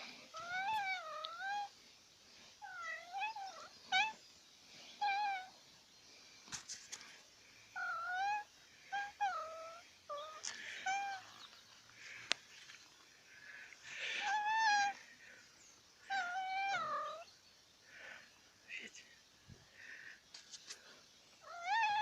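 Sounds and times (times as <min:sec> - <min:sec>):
cat meowing: 0:16.1 - 0:17.2, 0:21.4 - 0:22.0.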